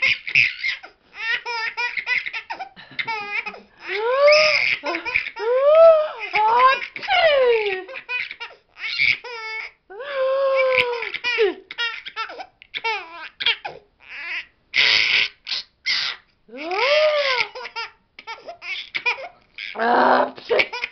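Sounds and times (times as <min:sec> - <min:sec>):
high-pitched laughter: 0:01.8 - 0:08.5, 0:10.0 - 0:12.0.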